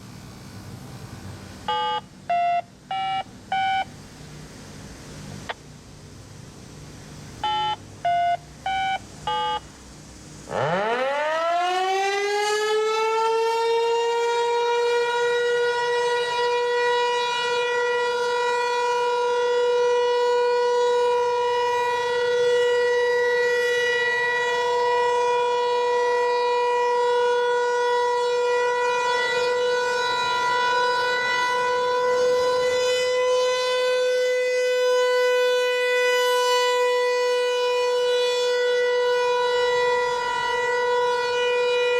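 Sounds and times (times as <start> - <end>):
short electronic beeps: 1.7 - 3.9, 7.4 - 9.6.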